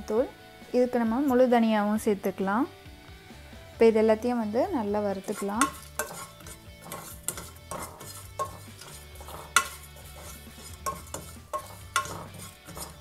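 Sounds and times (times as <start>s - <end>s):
utensil scraping and clinking pan: 5.2s - 13.0s.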